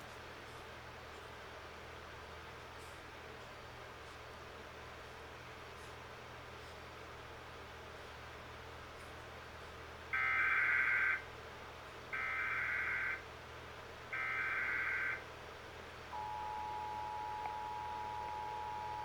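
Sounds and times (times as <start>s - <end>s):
two-tone attention signal: 16.2s - 19.0s.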